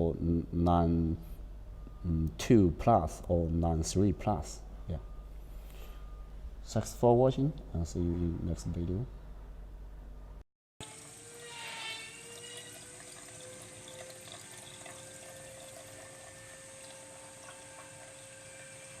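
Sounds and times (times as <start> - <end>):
brief machine whine: 10.8 - 19.0
extrusion machine humming: 10.8 - 19.0.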